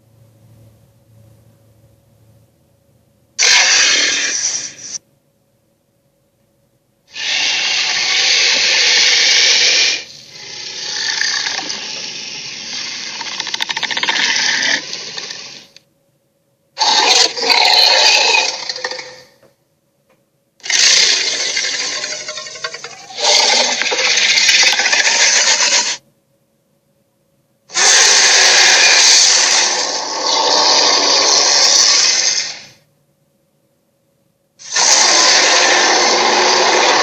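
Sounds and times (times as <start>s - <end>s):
sea monster creature roars: 3.4s - 5.0s, 16.8s - 19.3s, 20.6s - 26.0s, 27.7s - 32.7s, 34.6s - 37.0s.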